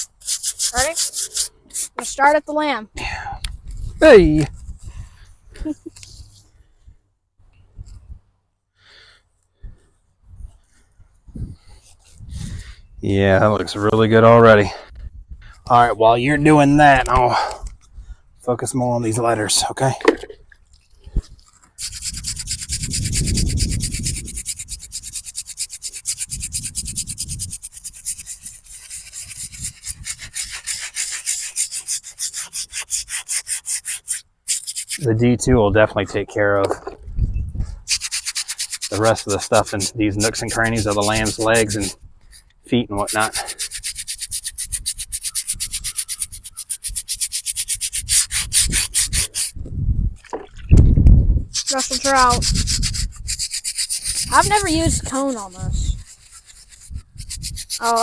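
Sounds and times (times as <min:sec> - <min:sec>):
stiff brush scrubbing stone: 0:00.0 - 0:02.5, 0:21.1 - 0:35.1, 0:37.8 - 0:49.6, 0:51.5 - 0:58.0.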